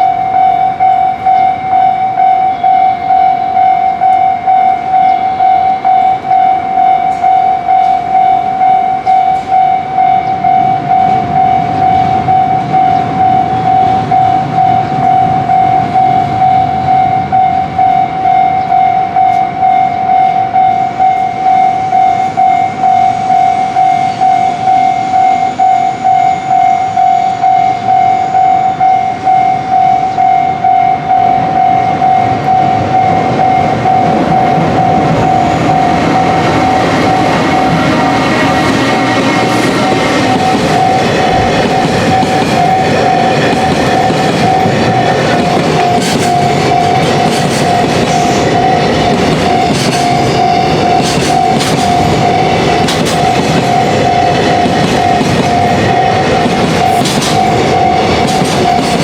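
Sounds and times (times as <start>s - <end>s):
level crossing alarm ringing: 0.0s - 59.0s
passing train rumble and clatter: 0.0s - 59.0s.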